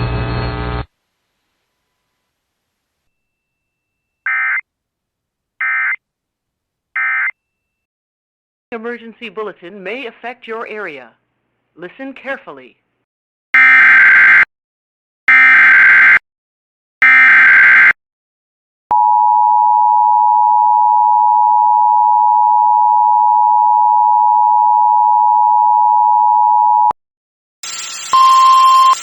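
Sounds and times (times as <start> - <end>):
digital data tone bursts: 27.6 - 29.0
two-tone attention signal: 27.6 - 29.0.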